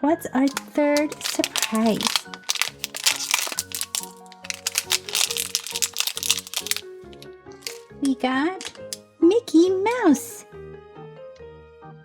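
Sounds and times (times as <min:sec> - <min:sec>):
light background music: 0:00.0 - 0:12.0
packaging crinkling: 0:00.5 - 0:06.8, 0:07.6 - 0:07.9.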